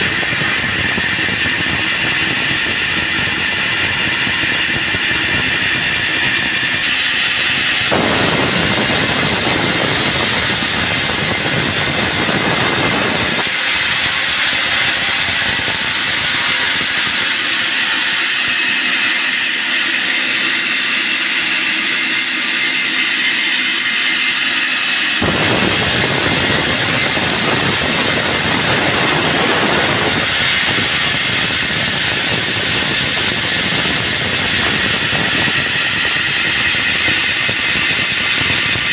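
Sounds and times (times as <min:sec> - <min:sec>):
band sawmill running: 0:00.0 - 0:38.9
deeper fuller noise: 0:00.0 - 0:38.9.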